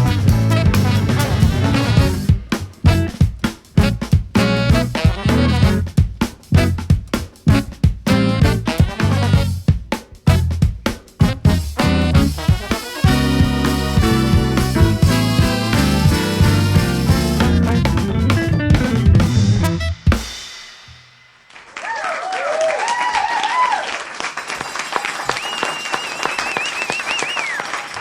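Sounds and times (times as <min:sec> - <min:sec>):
jazz band with horns and drums: 0:00.0 - 0:21.5
audience applauding: 0:21.5 - 0:28.0
audience whooping: 0:21.6 - 0:28.0
long whistle: 0:24.6 - 0:27.7.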